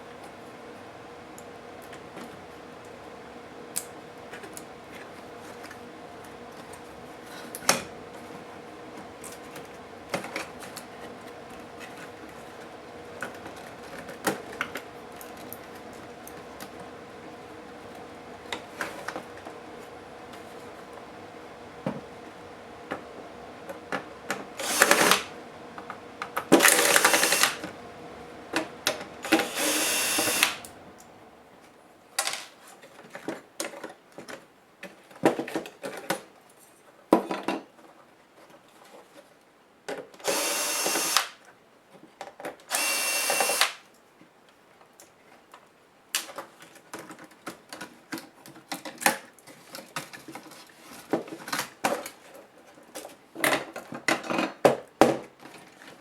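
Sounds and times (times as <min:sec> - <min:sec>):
electric screwdriver whirring: 0:24.6 - 0:25.3, 0:26.6 - 0:27.7, 0:29.2 - 0:30.7, 0:40.2 - 0:41.4, 0:42.7 - 0:43.8.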